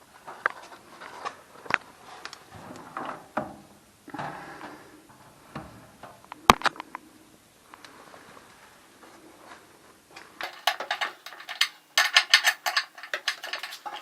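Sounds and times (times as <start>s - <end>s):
knocks and scrapes of parts: 2.4s - 6.8s, 10.2s - 14.0s.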